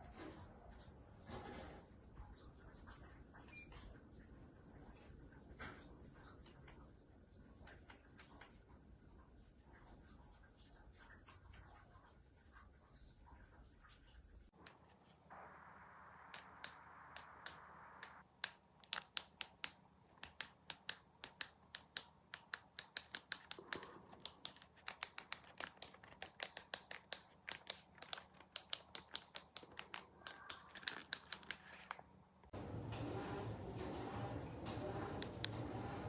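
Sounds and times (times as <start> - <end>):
faint steady hiss: 14.6 - 32.8
rapid sharp clicks: 16.3 - 32.7.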